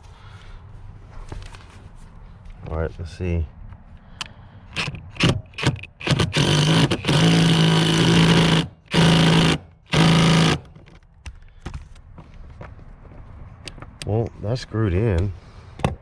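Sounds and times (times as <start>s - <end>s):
impact wrench driving bolt: 4.7s - 11.0s.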